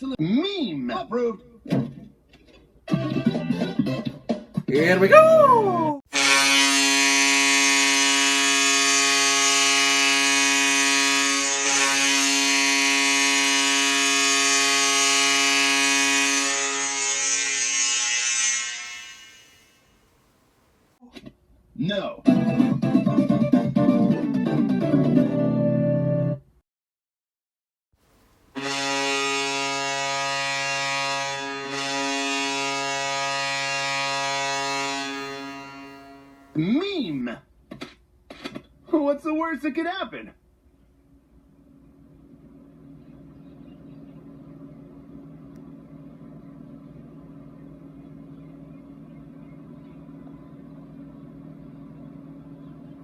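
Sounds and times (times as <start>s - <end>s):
arena goal horn blast: 6.1s - 17.0s, 28.6s - 36.7s.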